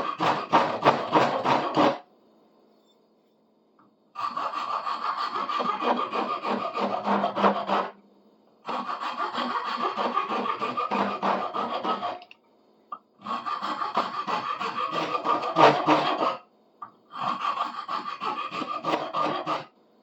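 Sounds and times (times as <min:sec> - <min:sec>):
hand tool working wood: 0:00.0 - 0:02.0, 0:04.2 - 0:07.9, 0:08.7 - 0:12.2, 0:13.2 - 0:16.4, 0:17.2 - 0:19.6.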